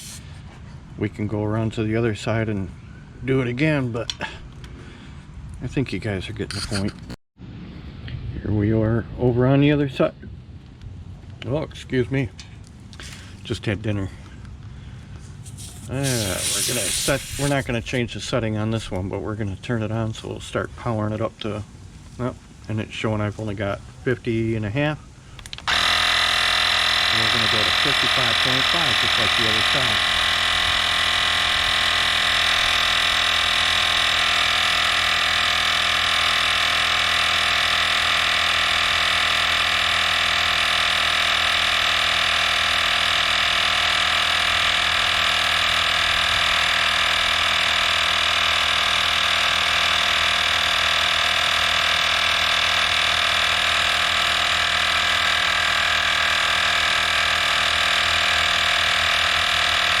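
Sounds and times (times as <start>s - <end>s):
tire inflator motor whine: 0.0s - 0.6s, 14.6s - 17.8s, 25.4s - 60.0s.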